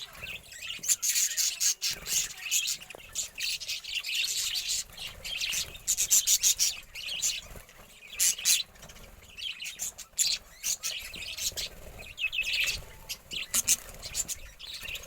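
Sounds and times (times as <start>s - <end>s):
budgerigars chirping: 0.0s - 15.0s.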